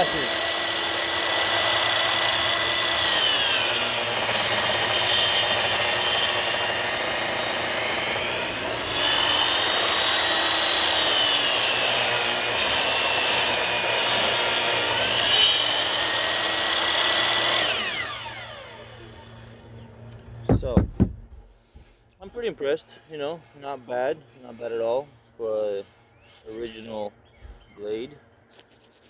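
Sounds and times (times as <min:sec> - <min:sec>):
saw blade winding down: 0:00.0 - 0:19.6
table saw cutting a board: 0:00.0 - 0:19.6.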